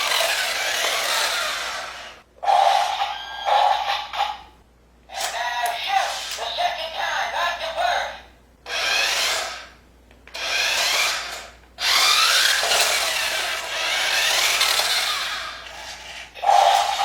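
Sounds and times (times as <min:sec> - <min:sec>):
toy truck motor and gears whirring: 0:00.0 - 0:03.4, 0:08.7 - 0:17.0.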